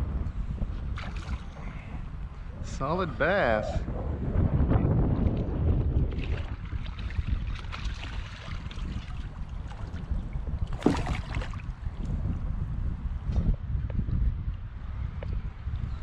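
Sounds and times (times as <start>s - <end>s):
wind buffeting microphone: 0.0s - 16.0s
small knocks on kayak: 10.7s - 11.6s
loud splash: 10.7s - 11.7s
water sloshing: 10.7s - 11.8s.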